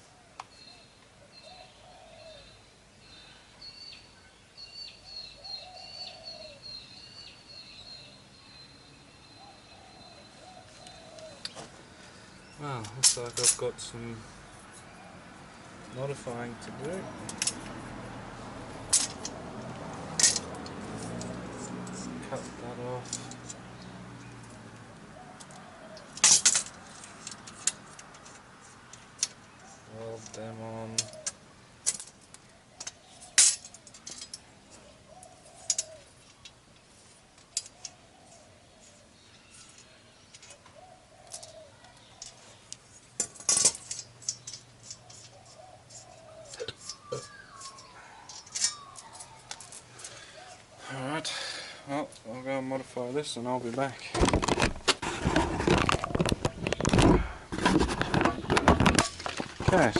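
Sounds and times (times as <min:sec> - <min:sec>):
small birds chirping: 0:00.0 - 0:54.2
dove cooing: 0:09.4 - 0:11.6, 0:25.1 - 0:26.3, 0:30.8 - 0:31.4, 0:34.8 - 0:36.2, 0:40.6 - 0:42.6, 0:44.3 - 0:51.7
tools and parts clattering: 0:12.8 - 0:13.6, 0:17.3 - 0:17.7, 0:18.9 - 0:19.4, 0:20.2 - 0:23.6, 0:25.4 - 0:34.5, 0:35.2 - 0:36.5, 0:37.4 - 0:38.0, 0:41.3 - 0:50.2, 0:54.1 - 0:59.9.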